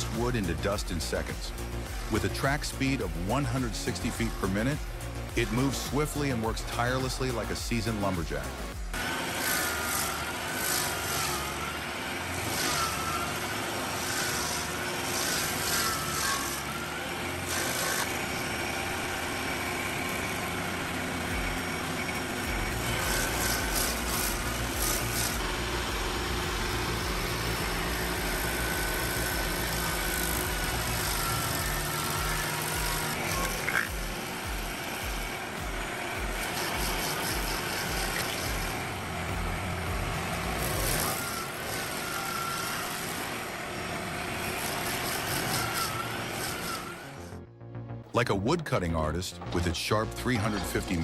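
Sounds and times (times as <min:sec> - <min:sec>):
stump grinder engine running: 0:00.0 - 0:47.4
wavering whine: 0:08.5 - 0:47.4
rough chipping bursts: 0:08.9 - 0:43.6.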